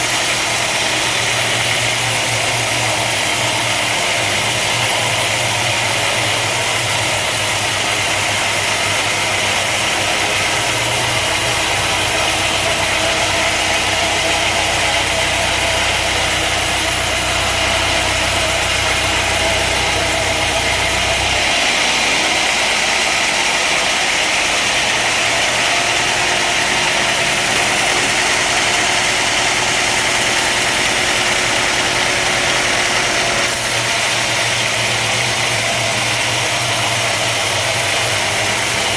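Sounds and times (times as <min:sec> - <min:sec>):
low motor hum: 0:00.0 - 0:37.2
woodworking machine hissing: 0:00.0 - 0:38.9.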